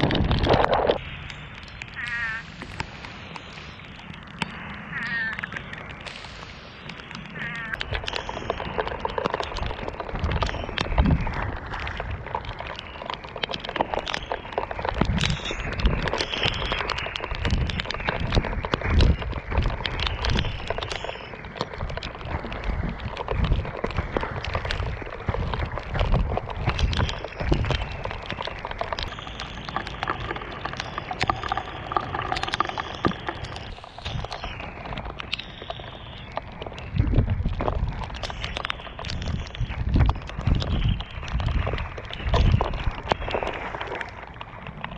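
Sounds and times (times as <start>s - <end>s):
inline skates rolling on mud: 0.0s - 44.9s.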